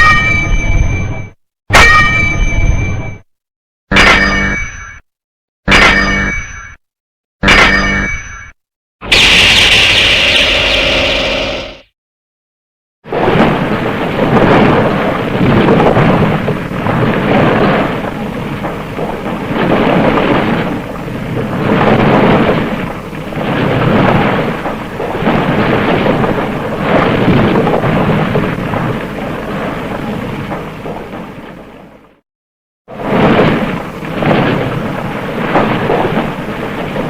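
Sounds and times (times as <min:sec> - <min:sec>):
thunder-like rumbling: 0:09.0 - 0:11.8, 0:13.1 - 0:32.1, 0:32.9 - 0:37.0.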